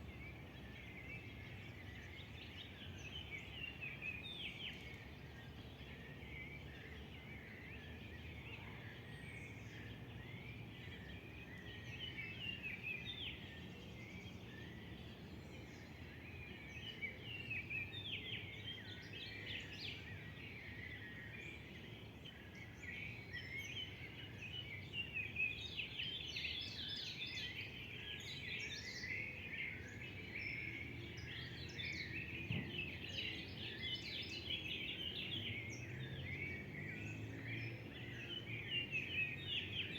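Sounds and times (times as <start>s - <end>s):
birds chirping and singing: 9.7s - 39.9s.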